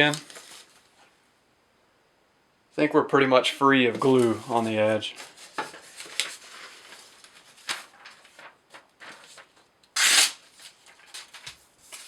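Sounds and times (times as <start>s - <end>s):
faint paper rustling: 0.0s - 1.1s, 3.8s - 9.7s, 10.4s - 12.0s
knife blade slicing paper: 10.0s - 10.4s.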